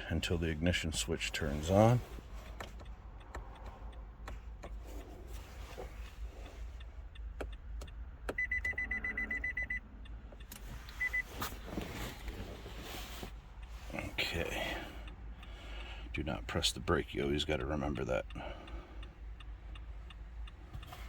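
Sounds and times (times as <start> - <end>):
high-pitched electronic beeps: 8.4 - 9.8.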